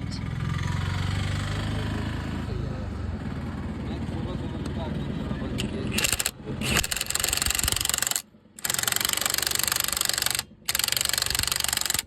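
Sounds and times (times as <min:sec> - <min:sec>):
impact wrench hammering: 0:05.9 - 0:12.0.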